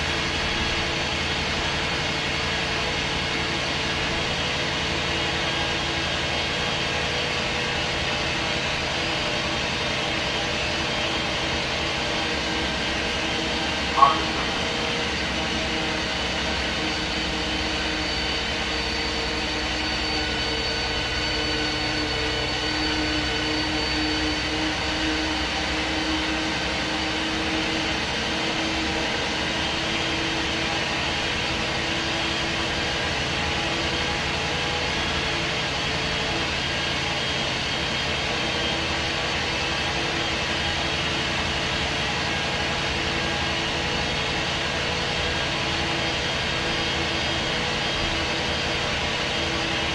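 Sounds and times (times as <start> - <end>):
bus diesel engine droning: 0.0 - 23.4.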